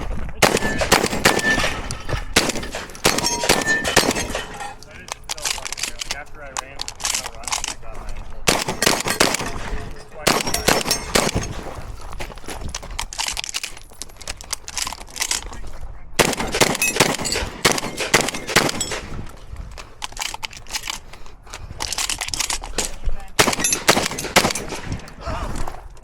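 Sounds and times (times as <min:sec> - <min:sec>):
shotgun shots: 0:00.0 - 0:04.8, 0:08.5 - 0:11.8, 0:16.2 - 0:19.3, 0:23.4 - 0:25.2.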